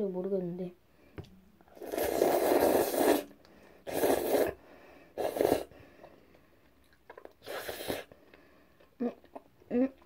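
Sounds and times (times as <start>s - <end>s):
noodles being slurped: 1.7s - 4.6s, 5.2s - 5.7s, 7.1s - 8.1s.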